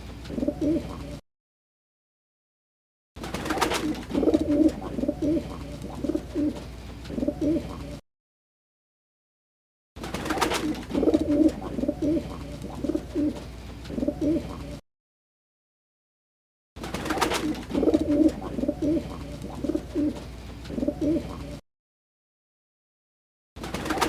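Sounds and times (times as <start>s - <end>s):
pigeon cooing: 0.3s - 1.2s, 3.5s - 8.0s, 10.3s - 14.8s, 17.1s - 21.6s.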